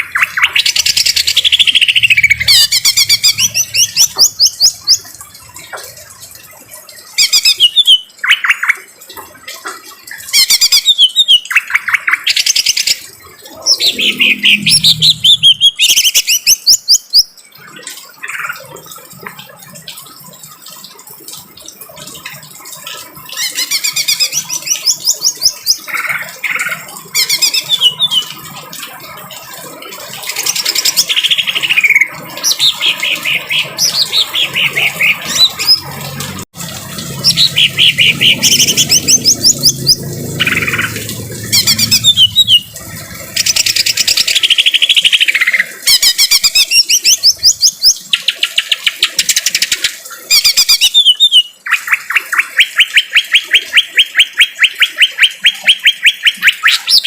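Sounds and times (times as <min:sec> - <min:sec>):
bird singing trills and whistles: 0:07.2 - 0:08.7, 0:10.4 - 0:17.3, 0:27.2 - 0:28.3, 0:41.5 - 0:42.7, 0:43.4 - 0:57.0.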